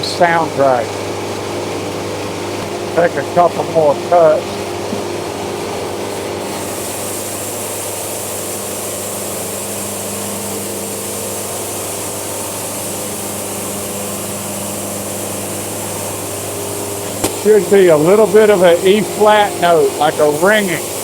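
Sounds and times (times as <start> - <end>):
sawmill engine running: 0.0 - 21.0
band blade hissing through wood: 6.4 - 21.0.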